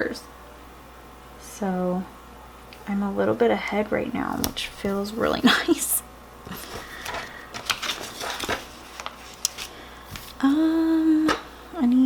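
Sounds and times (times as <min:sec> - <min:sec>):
paper supplies handled: 0:04.4 - 0:05.5, 0:06.5 - 0:10.4
woman humming: 0:10.4 - 0:11.3.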